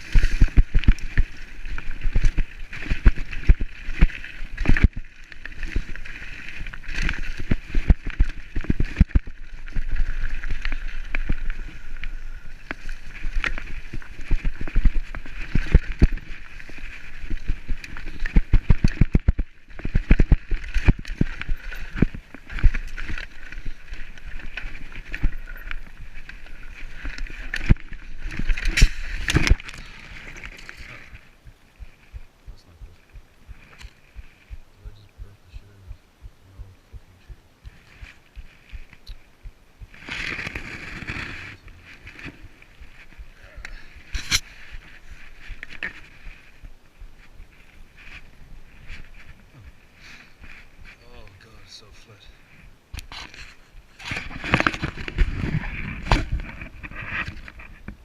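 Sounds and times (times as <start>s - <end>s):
bicycle rattling over bumps: 0.0s - 32.6s.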